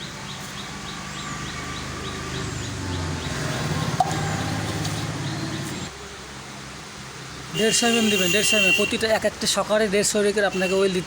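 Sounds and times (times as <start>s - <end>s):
vehicle engine humming: 0.0s - 5.9s.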